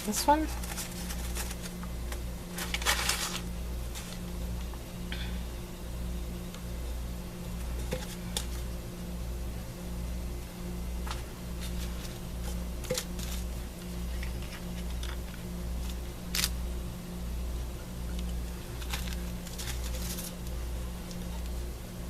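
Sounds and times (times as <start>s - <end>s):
pulsing low hum: 0.0s - 22.0s
craft supplies clicking and rustling: 18.8s - 20.4s.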